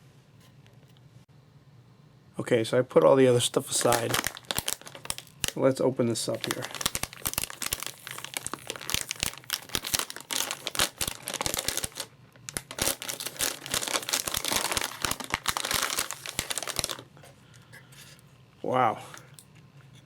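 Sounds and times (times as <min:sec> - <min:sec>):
plastic packaging crinkling: 0:03.5 - 0:05.6, 0:06.2 - 0:17.2.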